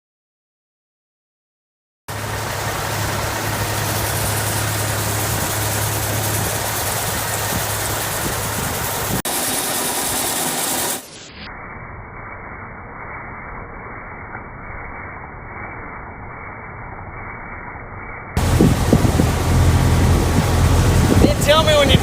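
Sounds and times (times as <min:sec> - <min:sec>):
vehicle engine humming: 0:02.1 - 0:11.1, 0:18.4 - 0:22.0
rushing noise: 0:02.1 - 0:22.0.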